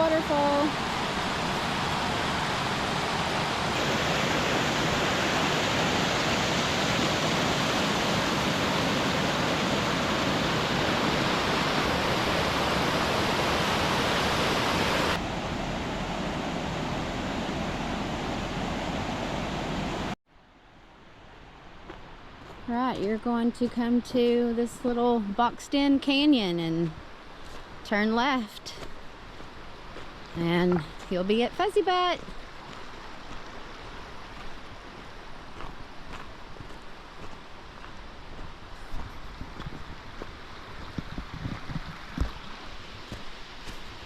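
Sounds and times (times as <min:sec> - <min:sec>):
waterfall rushing: 0:00.0 - 0:20.2.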